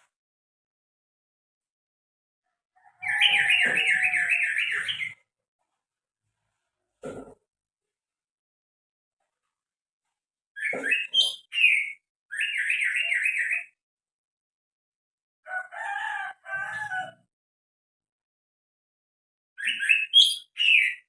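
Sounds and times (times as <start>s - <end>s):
bird calling and trilling: 2.8s - 5.2s, 10.6s - 13.8s, 19.6s - 21.0s.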